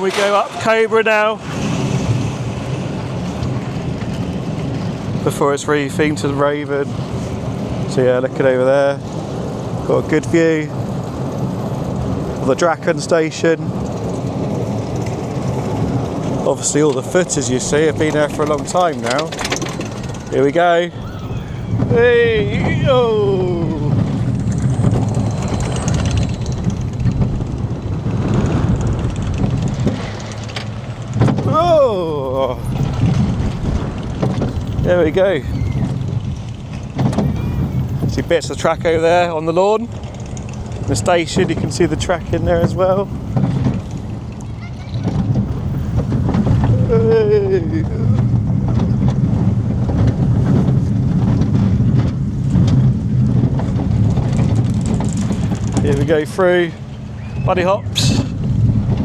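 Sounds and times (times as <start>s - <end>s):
roller coaster wheels rumbling: 0.0s - 59.0s
wind rushing over microphone: 0.0s - 59.0s
air rushing over microphone: 16.4s - 44.2s.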